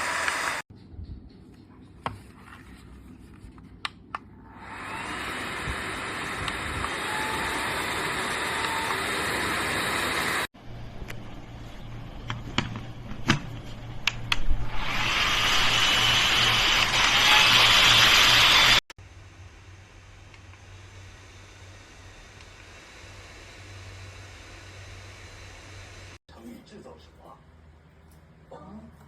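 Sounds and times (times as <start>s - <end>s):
fan blowing air: 4.5s - 28.9s
low hum: 10.5s - 26.2s.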